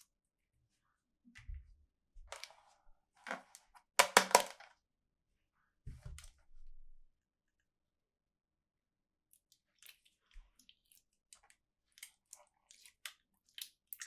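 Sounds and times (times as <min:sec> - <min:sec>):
plastic toys clicking and knocking: 0:04.0 - 0:04.6.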